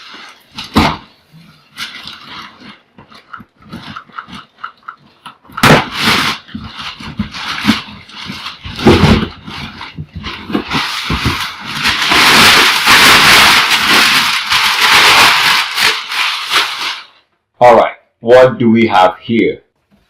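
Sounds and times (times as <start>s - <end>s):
loud rustling and thumping: 0.0s - 17.2s.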